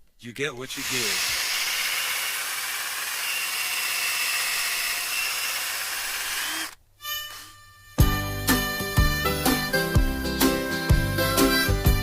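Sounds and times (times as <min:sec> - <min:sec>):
power drill whining: 0:00.7 - 0:08.0.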